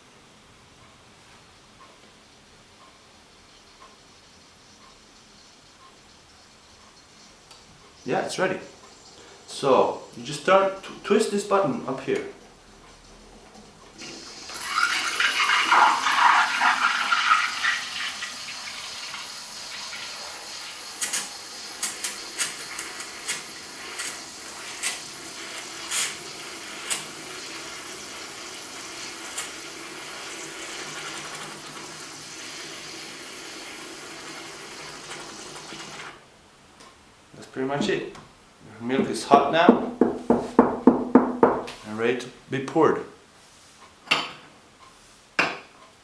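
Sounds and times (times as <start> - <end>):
steam gurgling through milk: 14.0 - 36.2
steam wand hissing: 14.0 - 36.2.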